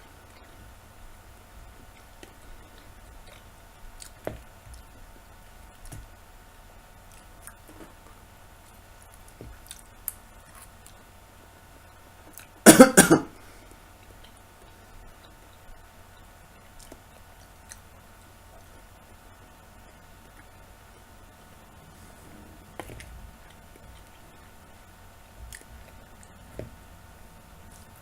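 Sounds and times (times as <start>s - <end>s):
man chewing: 1.7s - 6.0s, 7.0s - 11.1s, 12.2s - 15.8s, 16.5s - 28.0s
man coughing: 12.7s - 13.4s.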